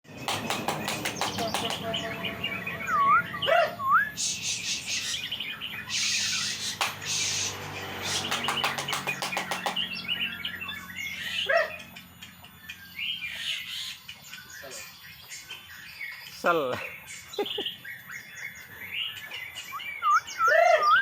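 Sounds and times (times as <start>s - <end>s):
songbird whistling and clicking: 0.1s - 2.0s, 5.9s - 9.9s
harsh hissing bird call: 4.1s - 9.8s.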